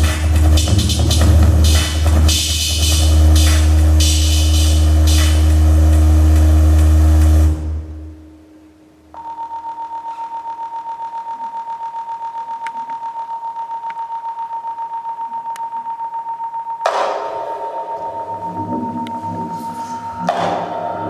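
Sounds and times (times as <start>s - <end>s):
loud music with heavy bass beat: 0.0s - 8.0s
pulsing high electronic tone: 9.2s - 21.0s.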